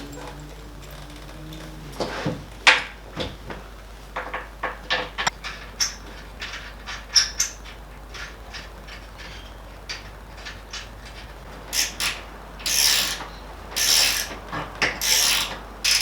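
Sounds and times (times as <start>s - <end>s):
metal hardware knocking and clinking: 4.2s - 16.0s.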